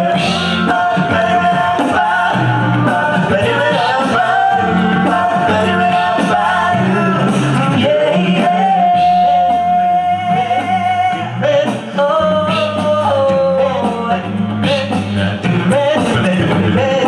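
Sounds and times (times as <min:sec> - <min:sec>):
male group singing in harmony: 0:00.0 - 0:17.0.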